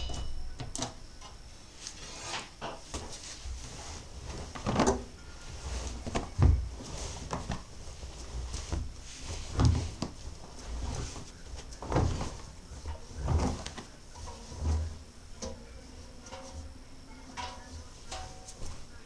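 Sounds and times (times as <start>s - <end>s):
washing machine drum turning: 0.0s - 1.4s, 2.7s - 19.0s
laundry thumping inside drum: 2.9s - 15.6s.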